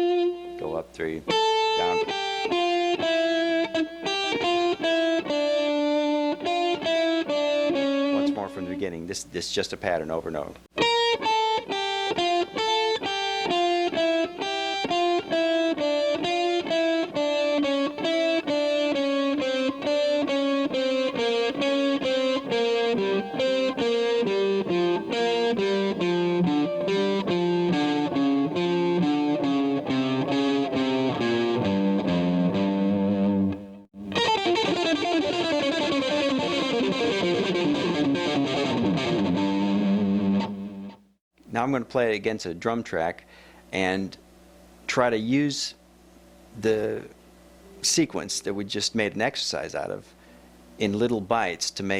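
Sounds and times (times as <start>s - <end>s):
electric guitar playing scales: 0.0s - 0.6s, 1.3s - 8.6s, 10.8s - 41.1s.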